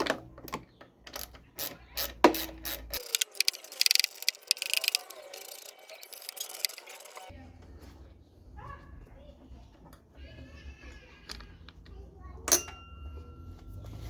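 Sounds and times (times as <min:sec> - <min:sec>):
socket ratchet clicking: 0:01.1 - 0:06.8.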